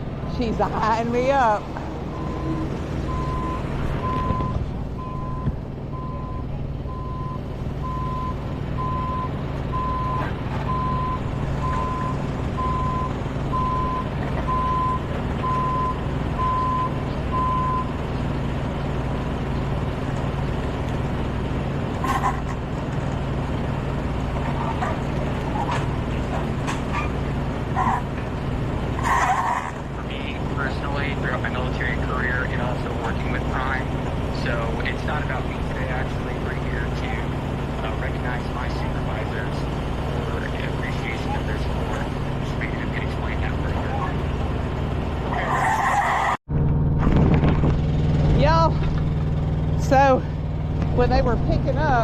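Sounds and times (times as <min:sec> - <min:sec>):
diesel engine running: 0:00.0 - 0:52.0
vehicle backup alarm beeping: 0:00.5 - 0:18.2.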